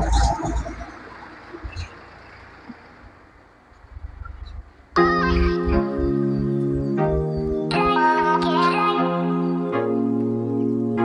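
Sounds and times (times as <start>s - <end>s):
keyboard chords: 4.3s - 11.0s
melody line: 5.0s - 8.5s.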